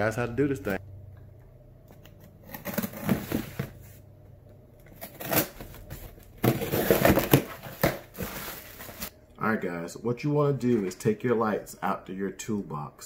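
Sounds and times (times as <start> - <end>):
rustling and crackling of objects handled: 5.6 - 9.1.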